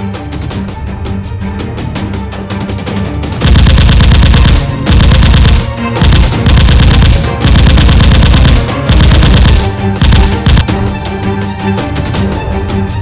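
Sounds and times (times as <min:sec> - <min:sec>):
background music: 0:00.0 - 0:13.0
automatic gunfire bursts: 0:03.4 - 0:10.7.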